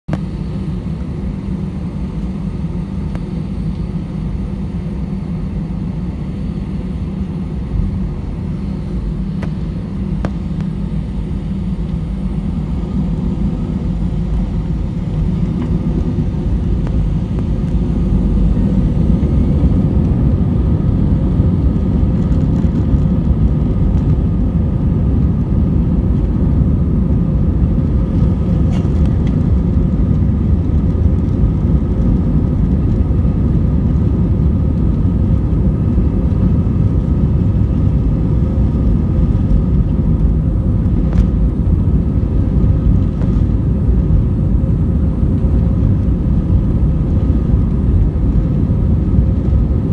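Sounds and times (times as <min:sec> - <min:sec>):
airliner engine rumble in cabin: 0:00.1 - 0:49.9.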